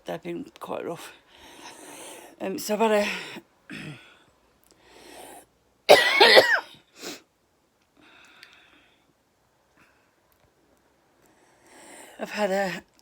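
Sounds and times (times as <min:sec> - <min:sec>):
wheezy breath: 0:01.3 - 0:02.4, 0:04.0 - 0:05.5, 0:11.2 - 0:12.2
person coughing: 0:05.9 - 0:06.8.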